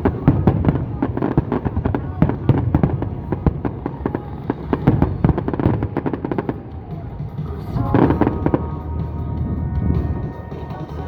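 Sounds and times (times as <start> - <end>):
fireworks crackling and bursting: 0.0 - 11.0
loud music: 2.2 - 11.0.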